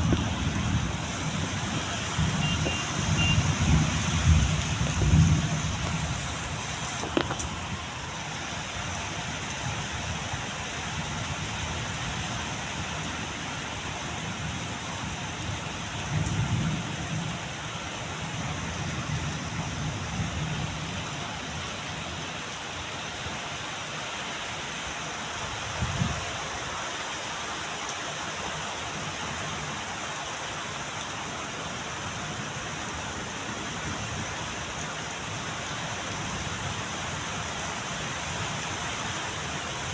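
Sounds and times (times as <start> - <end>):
low thunder rumbles: 0.0 - 6.8
heavy rain falling: 0.0 - 39.9.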